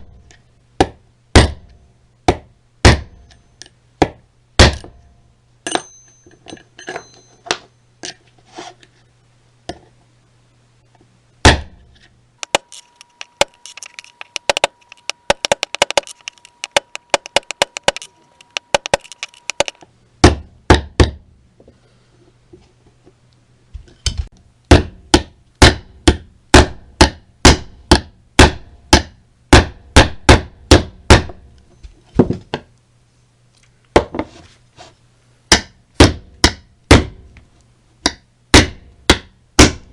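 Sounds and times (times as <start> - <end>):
hammer striking metal: 0.8 - 7.6.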